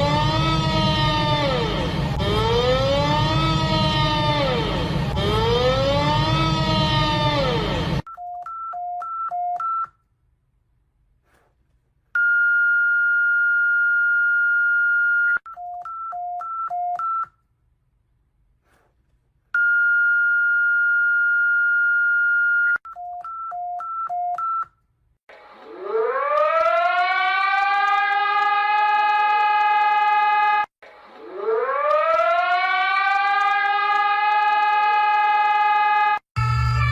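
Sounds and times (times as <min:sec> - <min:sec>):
siren wailing: 0:00.0 - 0:08.1, 0:25.6 - 0:36.9.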